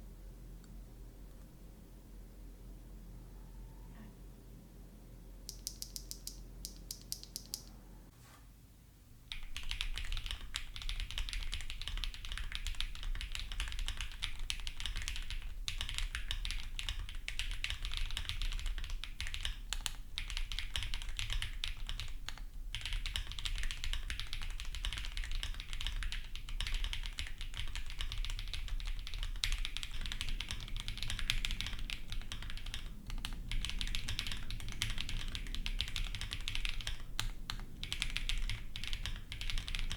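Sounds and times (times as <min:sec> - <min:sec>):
mechanical keyboard typing: 0:05.5 - 0:07.7, 0:09.3 - 0:39.9.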